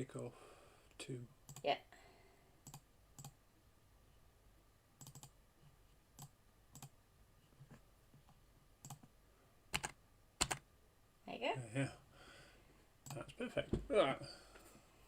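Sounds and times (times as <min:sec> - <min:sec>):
computer mouse clicking: 0:02.6 - 0:03.4, 0:05.0 - 0:05.4, 0:06.2 - 0:06.9, 0:08.8 - 0:09.1, 0:09.7 - 0:10.6.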